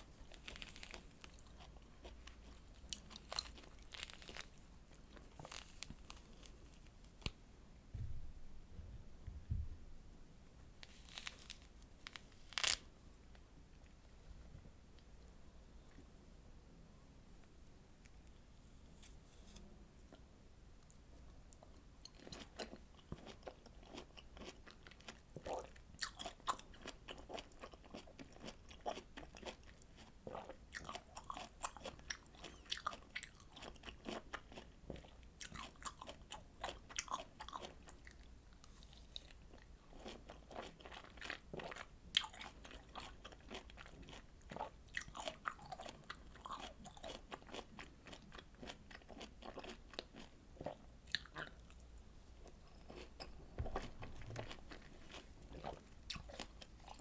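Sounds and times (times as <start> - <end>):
wet chewing of citrus fruit: 22.0 - 51.8, 52.4 - 57.0.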